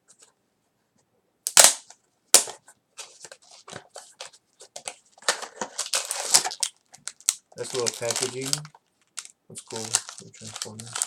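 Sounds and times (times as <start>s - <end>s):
packaging rustling and crinkling: 2.4s - 11.0s
packaging cracking: 4.8s - 11.0s.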